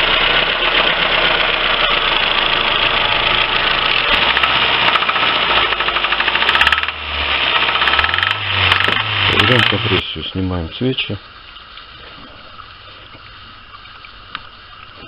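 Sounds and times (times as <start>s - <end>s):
petrol engine running: 0.0s - 10.0s
rhythmic engine knock: 0.0s - 10.0s.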